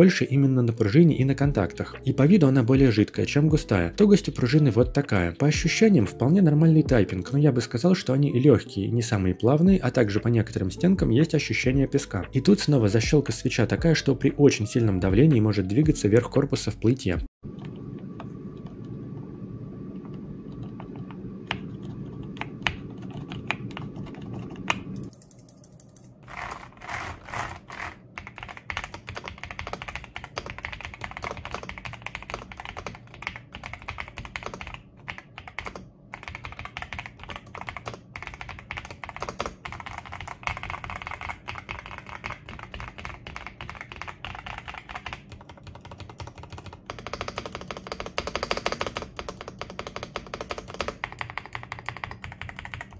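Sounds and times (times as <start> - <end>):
low hum: 17.5 - 28.0
mechanical keyboard typing: 20.5 - 52.9.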